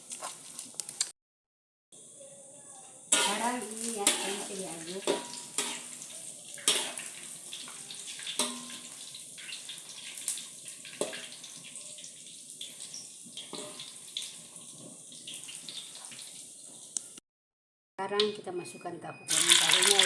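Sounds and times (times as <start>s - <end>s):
food sizzling in hot oil: 2.9s - 17.2s, 19.3s - 20.0s
spatula knocking against pan: 8.4s - 8.8s.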